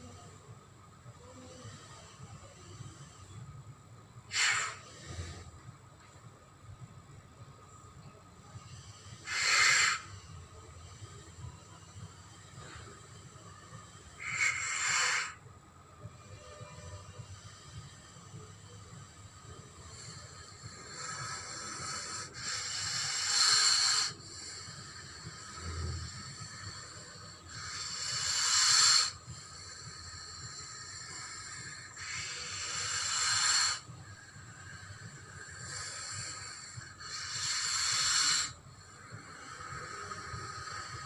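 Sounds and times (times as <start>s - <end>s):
giant snake hissing: 4.3s - 5.4s, 8.8s - 10.1s, 14.2s - 15.4s, 19.9s - 33.9s, 34.5s - 41.0s.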